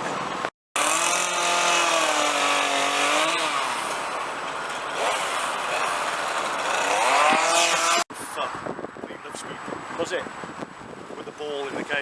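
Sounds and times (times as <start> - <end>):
chainsaw carving wood: 0.8 - 8.1.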